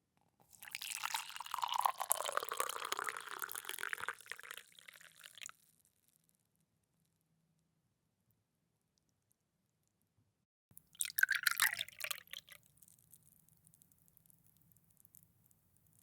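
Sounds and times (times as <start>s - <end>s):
liquid pouring into a glass: 0.5s - 5.5s, 11.0s - 12.6s
liquid dripping: 0.6s - 5.5s, 11.0s - 13.4s.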